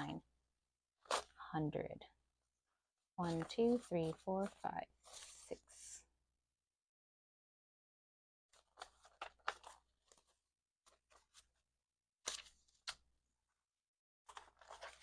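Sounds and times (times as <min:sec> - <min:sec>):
banknotes rustling and flicking: 0:03.2 - 0:05.6, 0:14.3 - 0:15.0.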